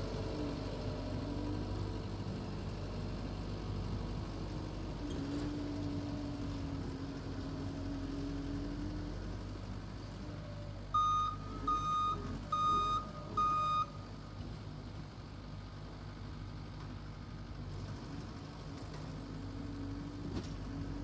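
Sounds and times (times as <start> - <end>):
reversing alarm beeping: 11.0 - 14.0.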